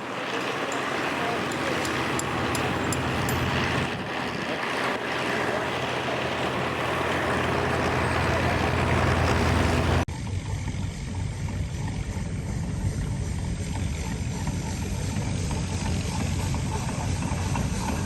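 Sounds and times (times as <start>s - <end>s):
rushing noisy wash: 0.0s - 10.1s
steam engine running: 0.0s - 10.1s, 10.7s - 18.0s.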